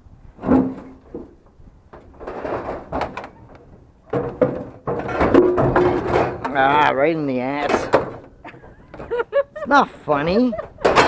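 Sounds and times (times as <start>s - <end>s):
metal scraping and clattering: 1.9s - 7.0s.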